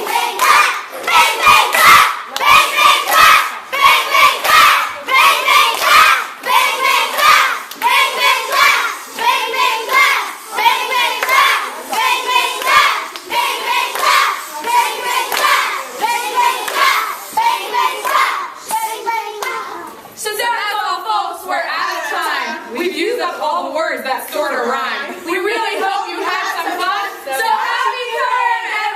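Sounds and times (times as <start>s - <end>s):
hand clapping: 0.0s - 3.4s, 5.5s - 10.2s, 10.9s - 17.4s
children singing and chanting: 0.0s - 28.9s.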